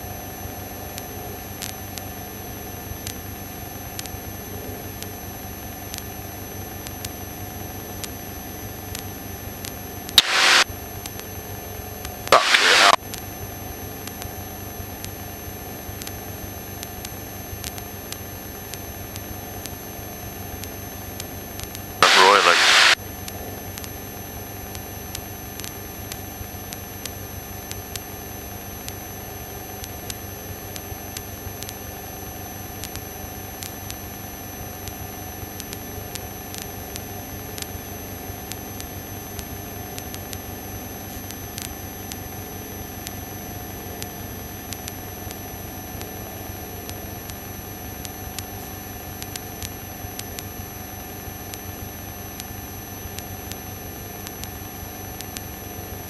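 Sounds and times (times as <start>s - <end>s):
thin high whine: 10.2s - 10.6s, 12.3s - 13.0s, 22.0s - 23.0s.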